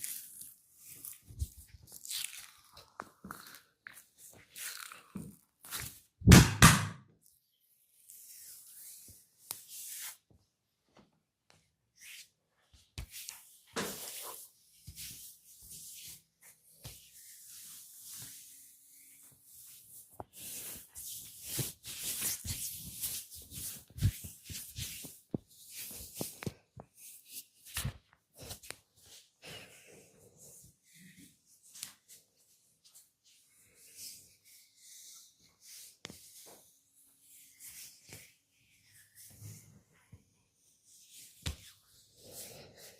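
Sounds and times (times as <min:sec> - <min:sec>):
hands rubbing oiled skin: 0:16.8 - 0:29.2.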